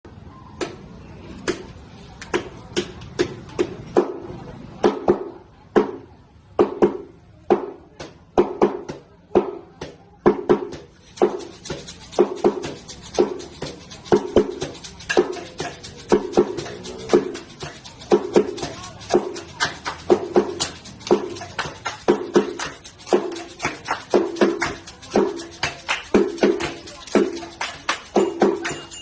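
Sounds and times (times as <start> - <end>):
percussion instrument knocks: 6.6 - 29.0.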